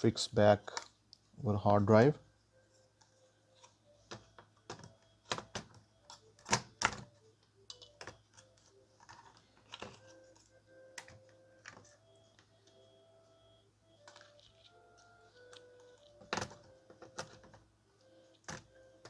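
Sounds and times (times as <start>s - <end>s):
plastic and metal laptop parts clicking: 7.7s - 12.5s, 15.4s - 17.6s.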